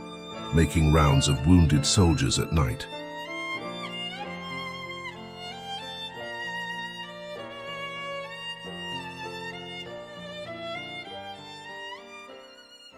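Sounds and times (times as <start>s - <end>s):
slow violin melody: 0.0s - 12.9s.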